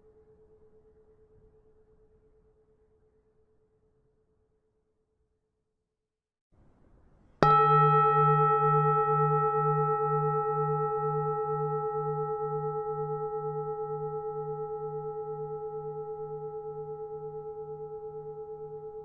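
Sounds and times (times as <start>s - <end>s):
temple bell ringing: 7.4s - 18.7s.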